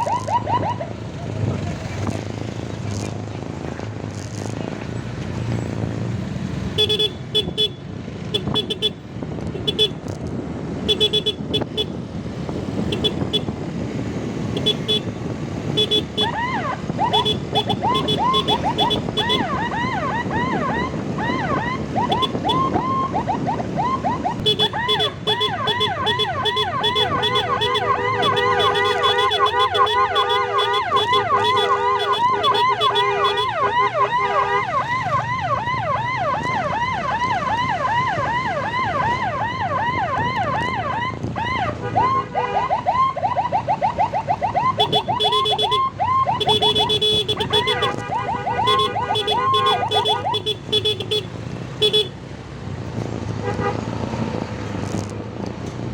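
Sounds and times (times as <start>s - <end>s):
electronic siren yelping: 0.0s - 1.4s, 15.8s - 50.6s.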